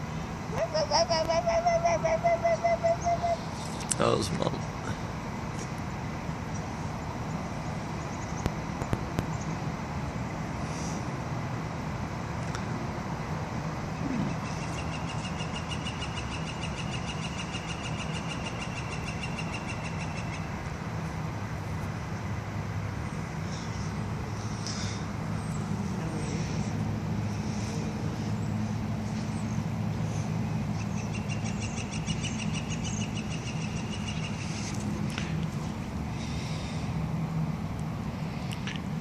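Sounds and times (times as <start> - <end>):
distant road traffic: 0.0 - 39.0
animal trilling: 0.5 - 3.5.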